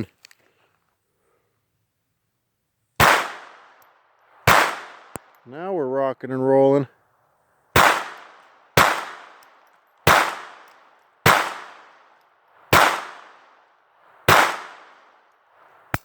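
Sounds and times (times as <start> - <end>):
pistol shots with echo: 3.0 - 5.4, 7.8 - 16.0.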